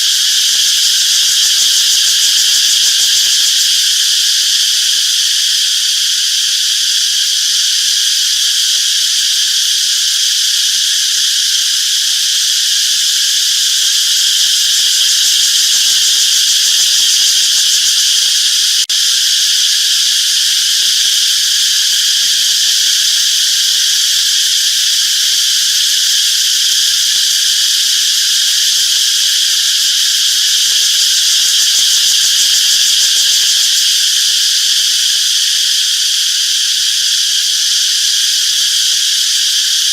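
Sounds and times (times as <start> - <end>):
cicadas buzzing: 0.0 - 39.9.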